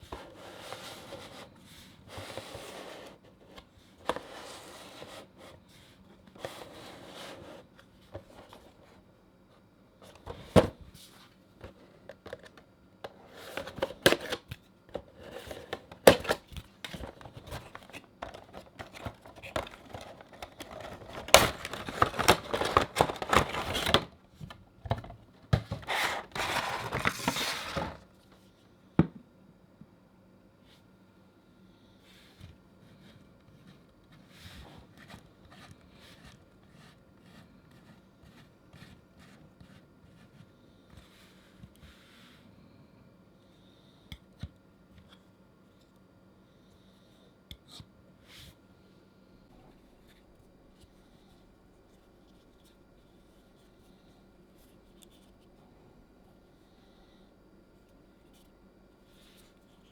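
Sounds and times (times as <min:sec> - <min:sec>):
packaging rustling and crinkling: 0:13.4 - 0:28.1
packaging clicks and taps: 0:15.5 - 0:27.9.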